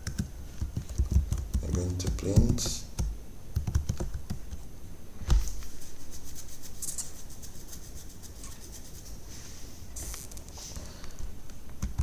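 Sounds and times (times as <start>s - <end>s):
keyboard typing: 0.0s - 4.5s.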